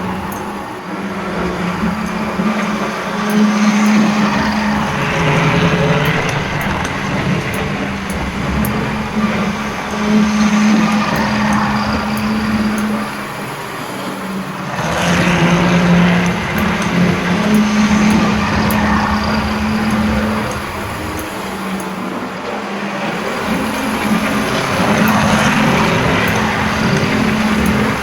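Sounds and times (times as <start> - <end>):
wheels clicking over rail joints: 0.0 - 22.1, 23.1 - 28.0
model train motor hum: 0.0 - 28.0.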